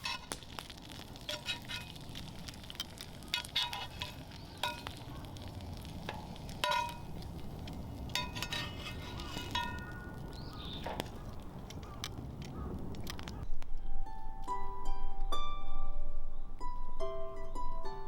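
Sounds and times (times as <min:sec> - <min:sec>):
bacon and egg sizzling in a pan: 0:00.0 - 0:12.0.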